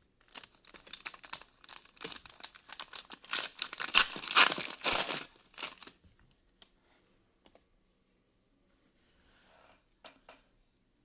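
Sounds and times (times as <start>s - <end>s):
wrapper tearing and crinkling: 0.3s - 6.0s.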